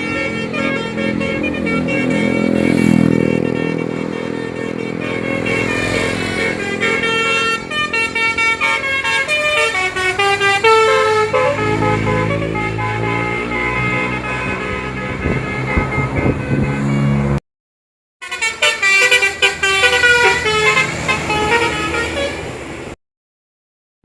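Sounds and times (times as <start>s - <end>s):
engine running: 0.0s - 17.4s
multi-tone musical horn: 0.0s - 17.4s, 18.2s - 22.6s.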